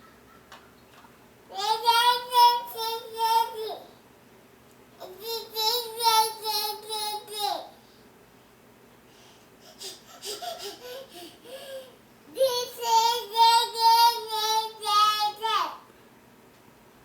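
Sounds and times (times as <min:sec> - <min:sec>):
child singing: 0:01.5 - 0:03.9, 0:05.0 - 0:07.7, 0:12.3 - 0:15.8.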